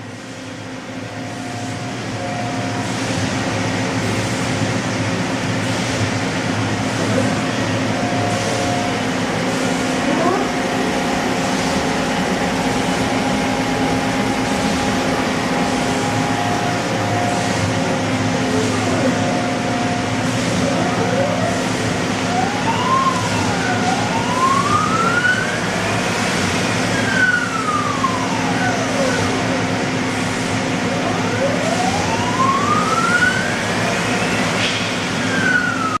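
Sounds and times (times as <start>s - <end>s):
machine hum: 0.0s - 36.0s
spindle whine: 6.6s - 29.8s.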